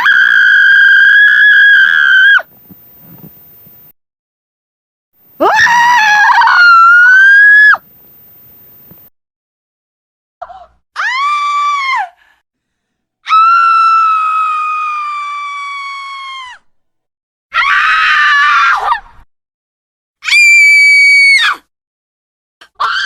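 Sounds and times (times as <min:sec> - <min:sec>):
woman screaming: 0:05.4 - 0:07.8.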